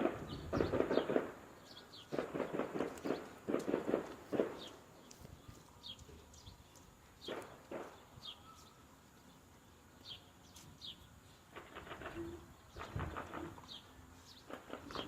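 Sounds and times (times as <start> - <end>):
soft noisy bursts: 0.0 - 15.0
faint small bird chirps: 8.1 - 9.4.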